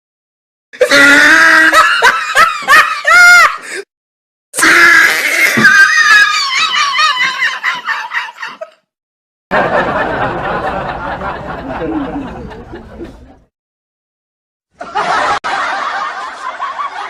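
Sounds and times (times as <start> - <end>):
low noisy laughter: 9.5 - 13.5, 14.8 - 17.0.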